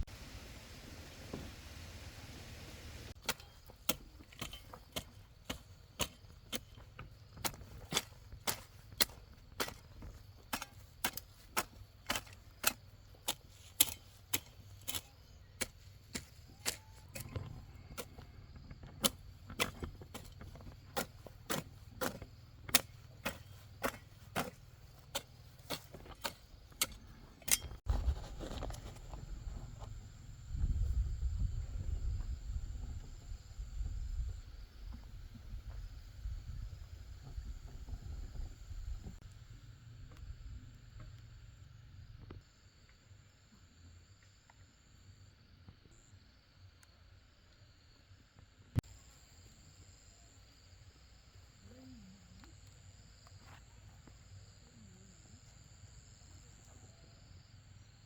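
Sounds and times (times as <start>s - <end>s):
hand tool chopping: 3.2s - 17.4s, 19.0s - 27.8s.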